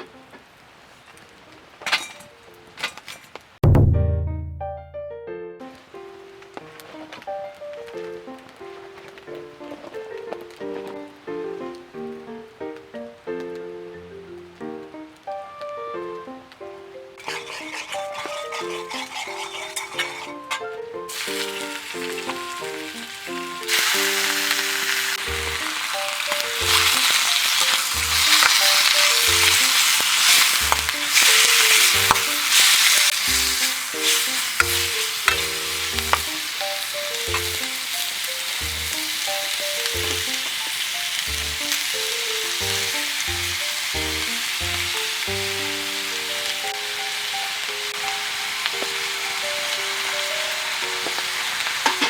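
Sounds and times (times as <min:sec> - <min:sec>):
stirring clicks: 0:17.2 - 0:20.3, 0:25.2 - 0:39.4
food sizzling in a wok: 0:17.2 - 0:52.0.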